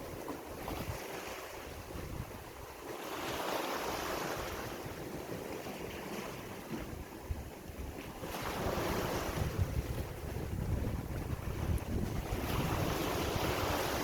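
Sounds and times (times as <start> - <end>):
wind buffeting microphone: 0.0 - 2.9, 3.8 - 14.0
sea waves washing onto shore: 0.0 - 14.0.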